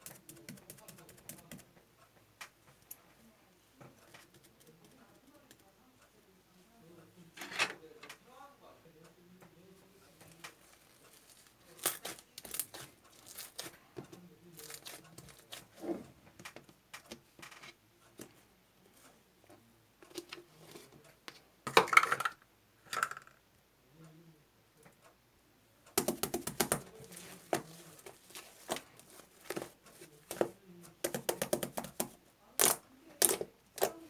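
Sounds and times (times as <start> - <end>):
small objects clicking and crinkling: 10.2 - 13.8, 14.6 - 15.6.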